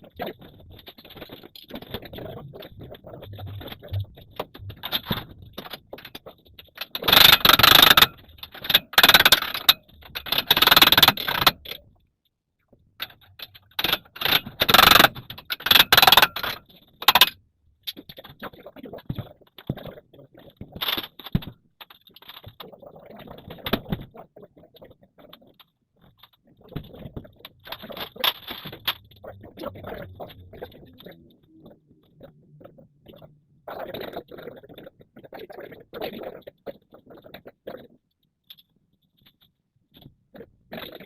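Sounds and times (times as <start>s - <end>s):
scraping and rattling: 0.1s - 11.8s.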